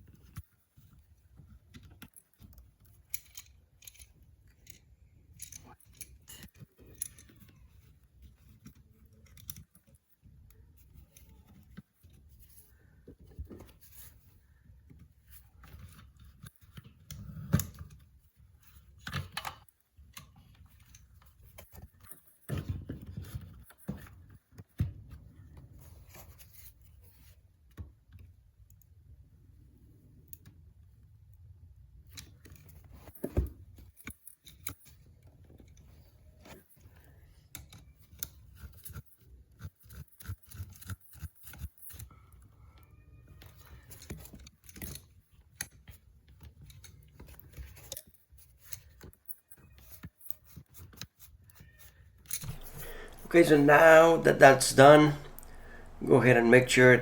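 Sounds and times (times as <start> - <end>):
hand tools clicking and scraping: 52.2 - 57.0.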